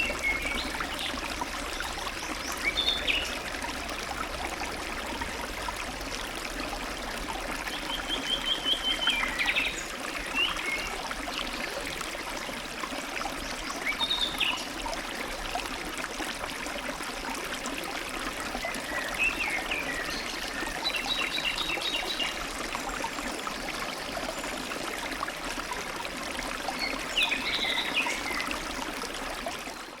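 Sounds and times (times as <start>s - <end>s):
songbirds calling: 0.0s - 3.4s, 7.7s - 10.9s, 26.8s - 28.7s
stream babbling: 0.0s - 30.0s.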